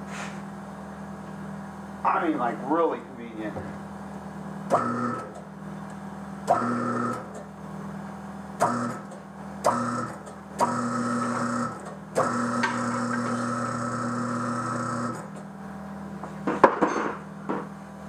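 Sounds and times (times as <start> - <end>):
electric motor humming: 4.7 - 5.3, 6.5 - 7.3, 9.7 - 15.4
motor starting clunk: 4.7 - 5.5, 6.4 - 7.5, 8.6 - 15.5.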